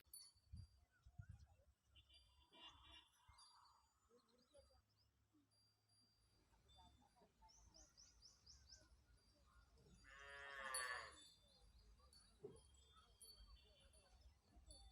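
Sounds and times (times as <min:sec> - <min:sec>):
cow mooing: 0:10.1 - 0:11.2.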